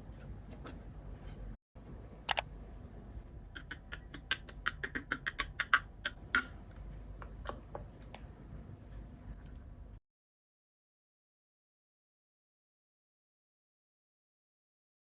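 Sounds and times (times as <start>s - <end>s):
low steady hum: 0.0s - 5.2s
small sharp clicks: 2.3s - 2.5s.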